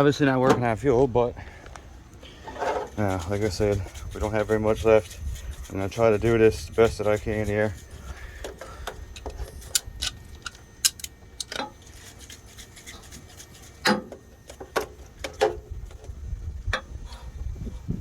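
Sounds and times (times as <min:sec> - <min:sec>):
small parts and tools clattering: 0:02.4 - 0:03.1, 0:08.1 - 0:16.1.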